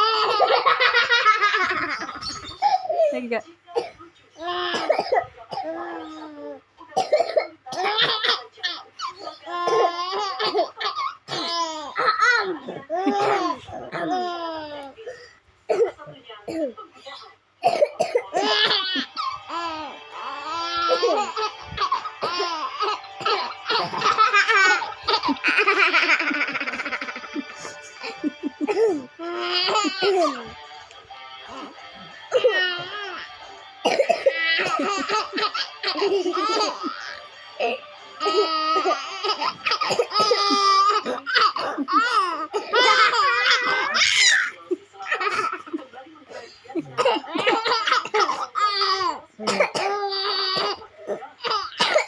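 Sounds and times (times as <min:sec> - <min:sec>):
baby laughing: 0:00.0 - 0:03.1, 0:18.4 - 0:30.5, 0:34.4 - 0:44.5
child coughing: 0:03.8 - 0:06.1, 0:07.0 - 0:08.4, 0:09.6 - 0:14.4, 0:15.7 - 0:16.7, 0:17.6 - 0:19.7, 0:20.8 - 0:27.1, 0:28.0 - 0:30.4, 0:33.8 - 0:44.0, 0:46.9 - 0:52.0.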